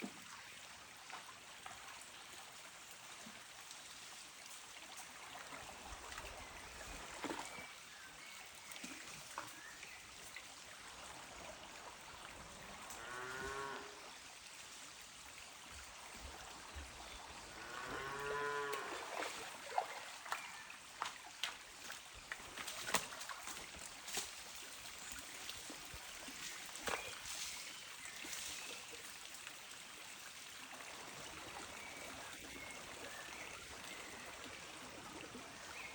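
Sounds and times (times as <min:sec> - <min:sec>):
stream trickling: 0:00.0 - 0:35.9
cows mooing: 0:12.9 - 0:14.0, 0:17.6 - 0:19.0.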